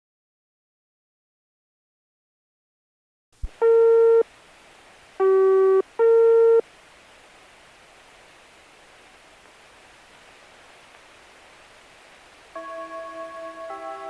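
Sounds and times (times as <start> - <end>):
steady radio hiss: 3.4 - 14.0.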